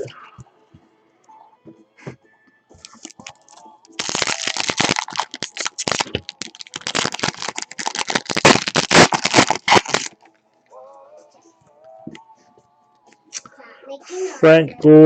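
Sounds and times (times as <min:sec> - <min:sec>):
wrapper tearing and crinkling: 0:02.8 - 0:10.2.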